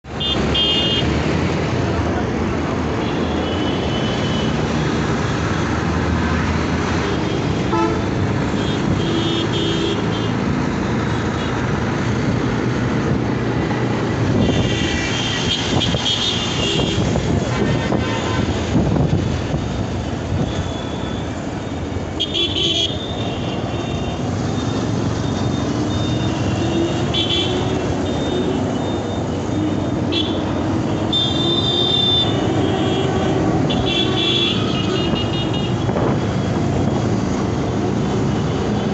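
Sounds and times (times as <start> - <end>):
road traffic noise: 0.0 - 38.9
vehicle horns honking: 0.2 - 1.1, 7.7 - 10.4, 14.4 - 18.7, 22.2 - 24.2, 30.1 - 36.0.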